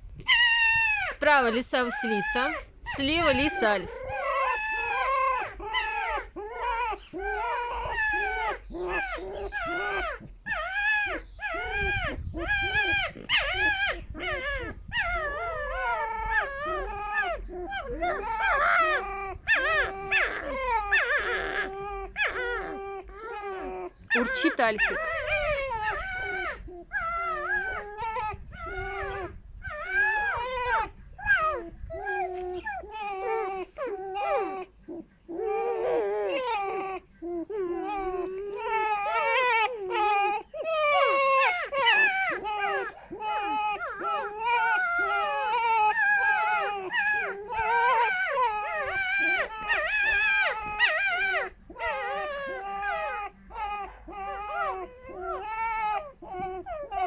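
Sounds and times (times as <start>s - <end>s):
foxes squeaking: 0.0s - 57.0s.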